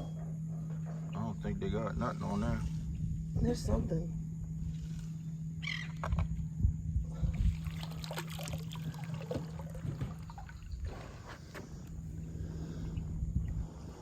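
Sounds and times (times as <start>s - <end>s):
steady low hum: 0.0s - 14.0s
wind rumbling on microphone: 1.4s - 14.0s
water splashing: 7.5s - 11.4s.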